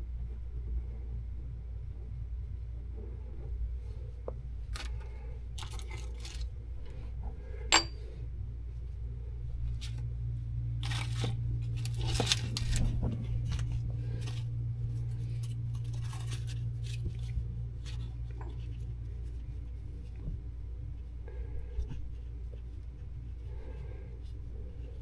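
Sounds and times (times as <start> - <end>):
steady low hum: 0.0 - 25.0
small metal parts clinking: 7.7 - 8.0.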